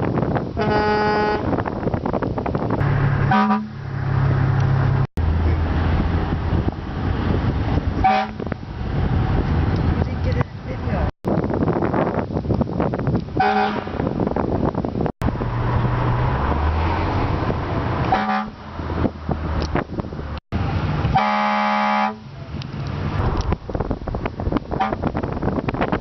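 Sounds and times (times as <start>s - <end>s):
vehicle road and engine noise: 0.0s - 26.0s
air horn blasts: 0.6s - 1.6s, 3.3s - 3.8s, 8.0s - 8.5s, 13.4s - 13.9s, 18.1s - 18.6s, 21.1s - 22.3s, 24.8s - 25.1s.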